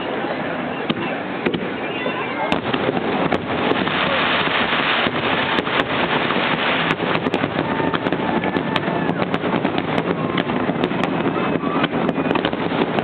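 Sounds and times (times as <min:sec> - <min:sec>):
fireworks bangs and crackling: 0:00.8 - 0:13.0.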